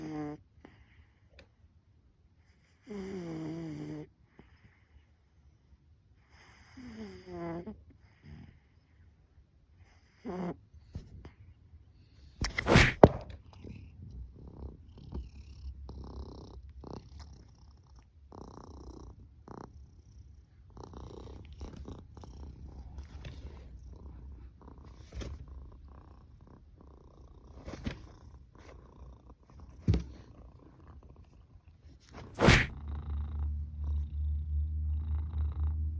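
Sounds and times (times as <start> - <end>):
cat purring: 12.2 - 35.9
sudden loud knocks or rustles: 12.4 - 13.4.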